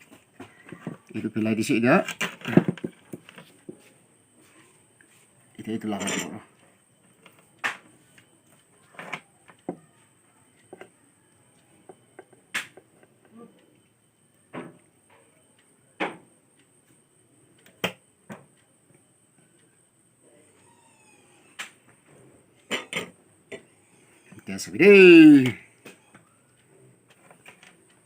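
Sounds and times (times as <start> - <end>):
small hard parts clicking and knocking: 1.9 - 3.8.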